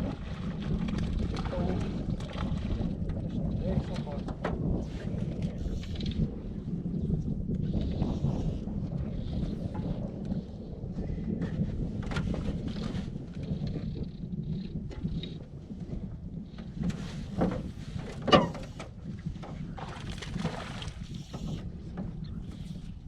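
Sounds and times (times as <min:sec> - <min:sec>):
wind and water rumble: 0:00.0 - 0:23.0
knocks against boat: 0:17.4 - 0:20.6.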